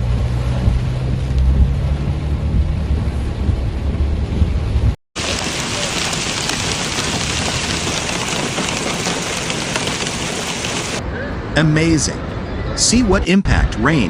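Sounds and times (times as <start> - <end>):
deep low rumble: 0.0 - 12.8
heavy rain hissing: 5.2 - 11.0.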